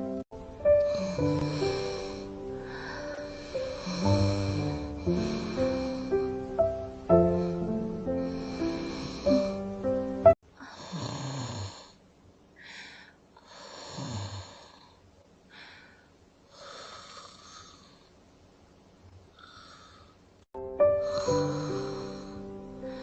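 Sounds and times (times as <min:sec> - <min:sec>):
music: 0:00.0 - 0:10.4, 0:20.6 - 0:23.0
girl snoring: 0:00.8 - 0:12.0, 0:13.4 - 0:15.0, 0:16.6 - 0:18.1, 0:21.0 - 0:23.0.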